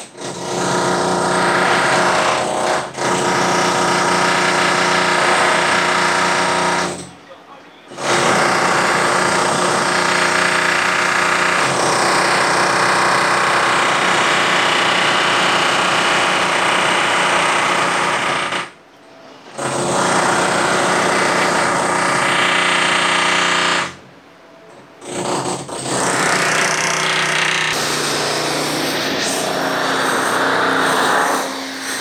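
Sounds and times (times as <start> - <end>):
power tool hammering: 0.0 - 7.1, 7.9 - 18.8, 19.6 - 24.0, 25.0 - 32.0.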